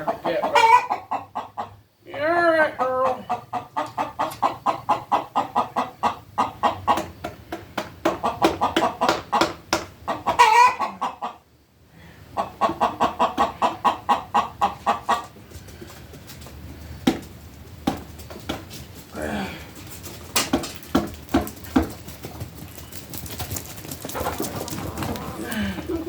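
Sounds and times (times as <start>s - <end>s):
hen clucking: 0.0s - 7.4s, 8.0s - 11.5s, 12.2s - 15.8s, 21.3s - 26.0s.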